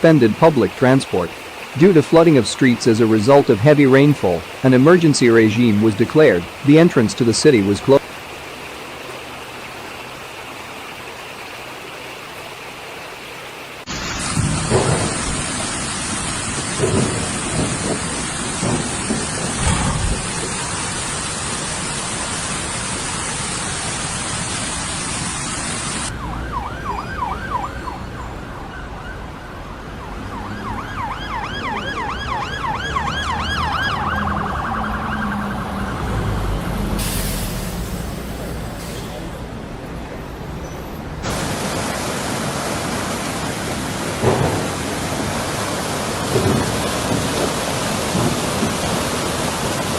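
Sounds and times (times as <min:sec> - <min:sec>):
heavy rain and floodwater rushing: 0:00.0 - 0:49.9
wavering emergency siren: 0:26.0 - 0:36.9.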